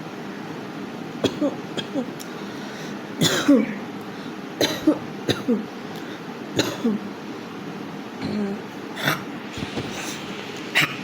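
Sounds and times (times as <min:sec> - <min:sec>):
woman coughing: 0:01.2 - 0:02.1, 0:03.2 - 0:03.8, 0:04.6 - 0:05.7, 0:06.6 - 0:07.1, 0:08.2 - 0:09.3.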